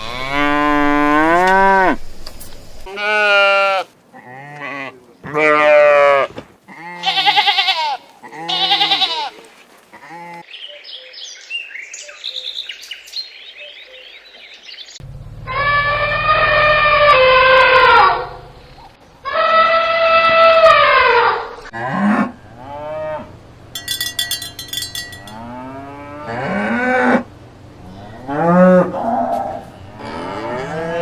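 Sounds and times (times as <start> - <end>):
cattle mooing: 0.0 - 2.0, 15.5 - 18.5, 19.4 - 23.4, 25.2 - 31.0.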